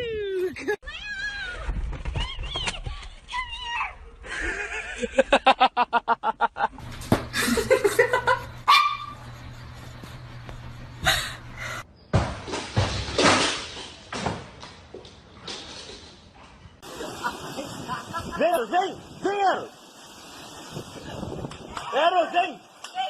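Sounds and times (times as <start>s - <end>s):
dog barking yappy barks: 8.7s - 9.2s.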